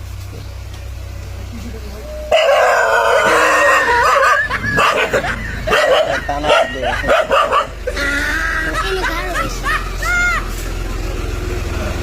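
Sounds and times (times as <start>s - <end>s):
dog harsh call: 2.2s - 8.0s
dog yelping barks: 2.2s - 8.0s.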